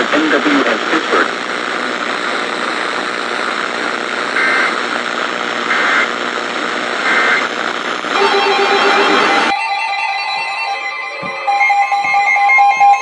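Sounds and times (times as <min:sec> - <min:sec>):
radio static hiss: 0:00.0 - 0:09.5
steady tones: 0:08.1 - 0:09.6.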